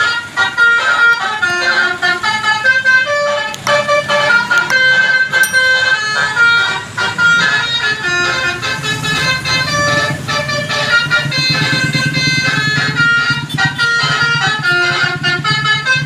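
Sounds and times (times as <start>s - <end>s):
multi-tone electric horn melody: 9.7s - 16.0s.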